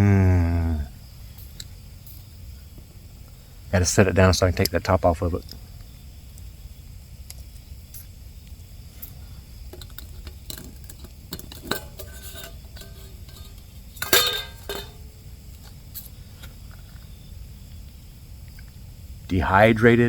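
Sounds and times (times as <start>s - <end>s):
loud ringing clank: 9.7s - 15.2s
metal lid clinks and scrapes: 9.7s - 15.2s.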